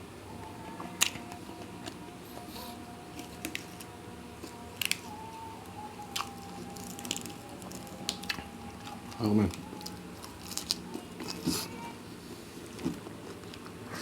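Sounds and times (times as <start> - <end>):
wet chewing and mouth noises: 6.0 - 11.8.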